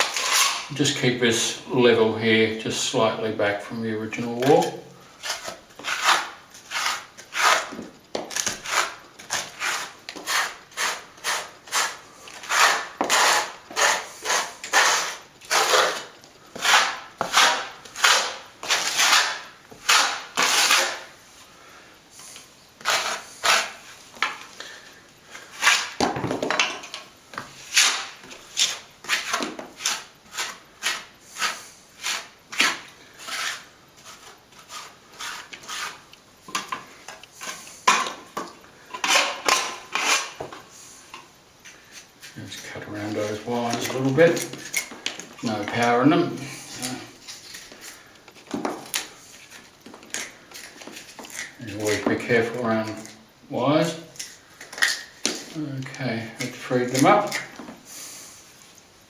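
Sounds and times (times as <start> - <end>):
plastering tool scraping plaster: 0.0 - 1.0, 4.2 - 21.1, 22.8 - 24.0, 25.3 - 26.0, 27.4 - 36.1, 38.9 - 40.6, 41.7 - 53.2.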